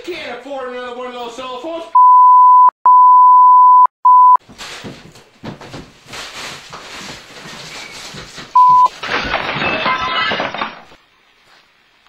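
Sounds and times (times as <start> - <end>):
censor bleep: 2.0 - 4.4, 8.6 - 8.9
shuffling noise: 4.4 - 8.9.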